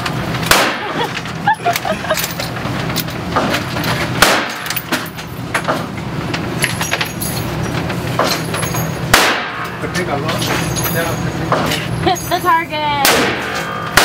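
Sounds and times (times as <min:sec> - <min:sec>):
steady low hum: 0:00.0 - 0:14.0
fainter sharp shots: 0:00.5 - 0:01.0, 0:04.2 - 0:04.6, 0:09.1 - 0:09.6, 0:13.0 - 0:14.0
loud rifle shot: 0:00.5 - 0:01.0, 0:04.2 - 0:04.7, 0:09.1 - 0:09.6, 0:13.0 - 0:14.0.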